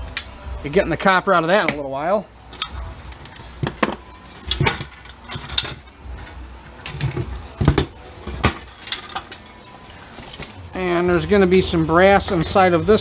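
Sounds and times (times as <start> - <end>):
metal parts and tools knocking: 2.5 - 9.6.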